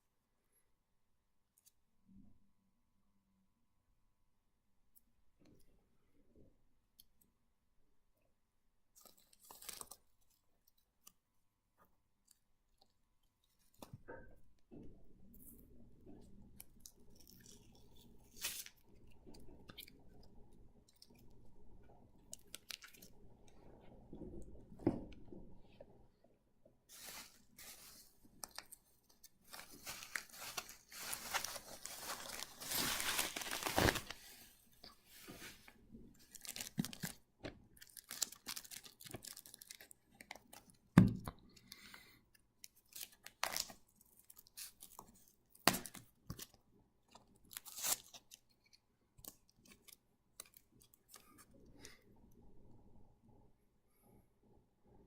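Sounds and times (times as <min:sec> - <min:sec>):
comic books crinkling and rustling: 0:09.0 - 0:10.6, 0:16.2 - 0:20.3, 0:26.9 - 0:40.8, 0:42.6 - 0:46.6, 0:47.2 - 0:51.6.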